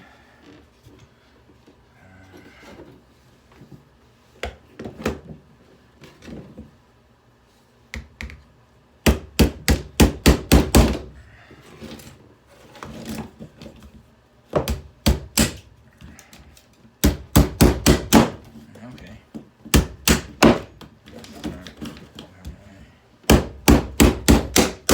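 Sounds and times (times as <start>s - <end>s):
hammer blows on plastic: 23.2s - 24.9s.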